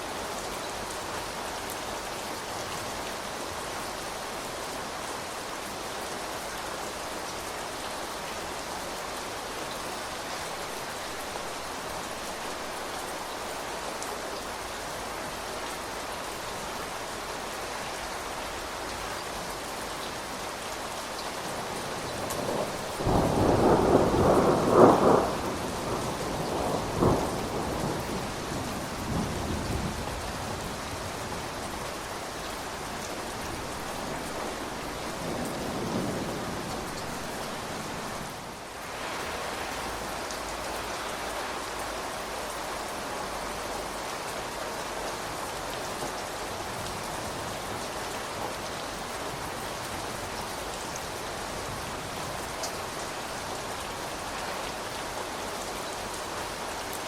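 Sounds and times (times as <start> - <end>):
rain pattering: 0.0 - 57.0
thunder rumble: 22.0 - 30.6.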